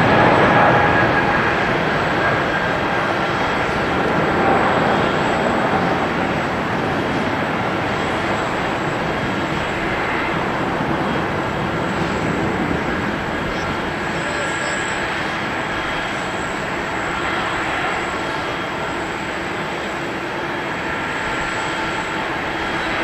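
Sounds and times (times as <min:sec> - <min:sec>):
jet engines at takeoff: 0:00.0 - 0:23.0.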